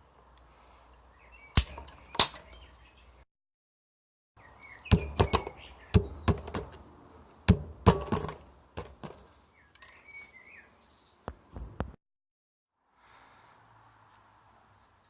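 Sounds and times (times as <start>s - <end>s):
sharp knocks and clanks: 4.9s - 6.8s, 7.5s - 9.3s.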